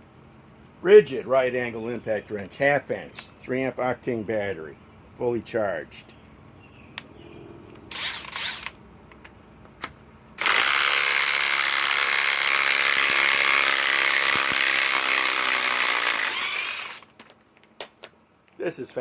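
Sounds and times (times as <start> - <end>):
impact wrench hammering: 10.4 - 18.2.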